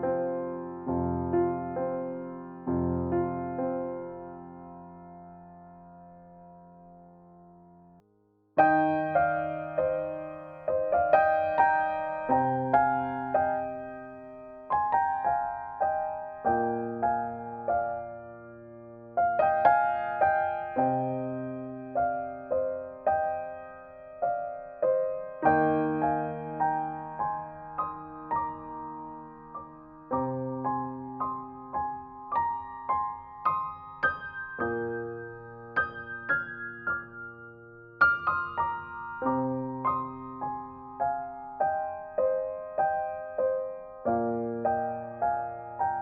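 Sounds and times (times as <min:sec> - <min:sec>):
solo piano music: 0:00.0 - 0:46.0.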